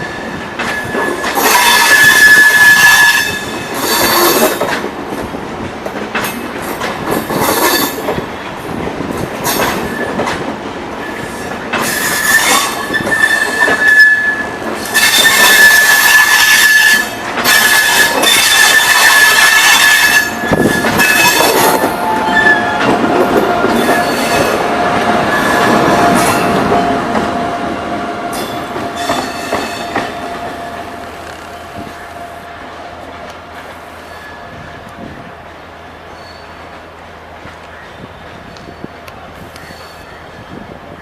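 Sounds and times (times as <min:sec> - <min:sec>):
train wheels squealing: 0:00.0 - 0:04.6, 0:11.0 - 0:22.9, 0:33.9 - 0:34.9, 0:36.1 - 0:36.8, 0:37.7 - 0:41.0
train clattering: 0:00.0 - 0:41.0.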